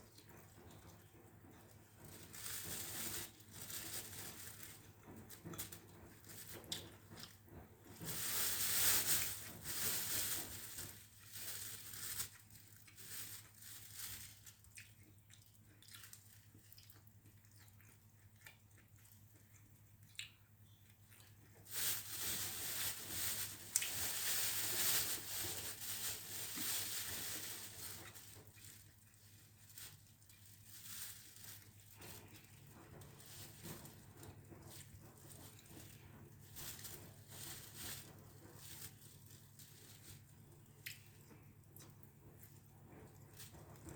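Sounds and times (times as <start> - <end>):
person chewing noodles: 14.5 - 21.4.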